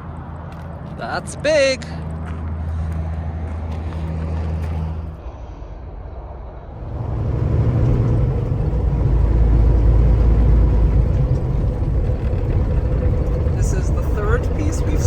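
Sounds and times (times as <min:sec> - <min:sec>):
truck engine and road rumble: 0:00.0 - 0:15.0.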